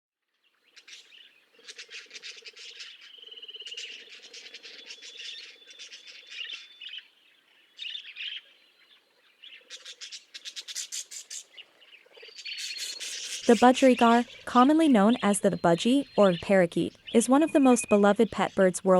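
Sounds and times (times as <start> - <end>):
budgerigar chirping and warbling: 0.8 - 7.0, 12.2 - 18.9.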